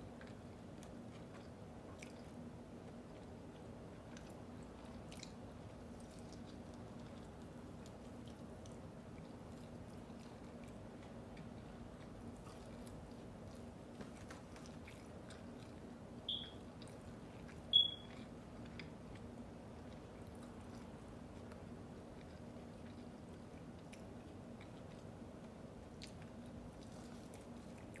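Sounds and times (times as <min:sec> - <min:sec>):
chewing food: 0:00.0 - 0:28.0
faint steady hum: 0:00.0 - 0:28.0
short high chirps: 0:16.3 - 0:16.6, 0:17.7 - 0:18.1.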